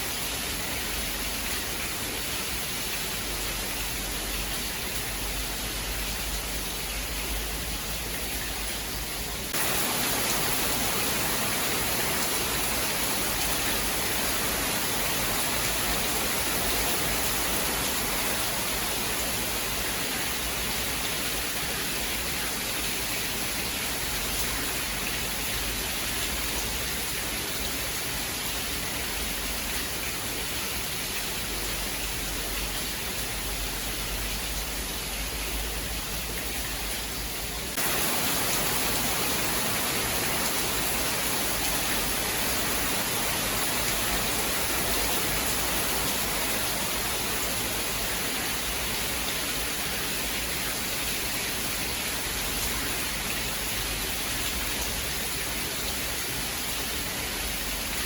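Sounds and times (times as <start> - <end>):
dense rain hiss: 0.0 - 58.0.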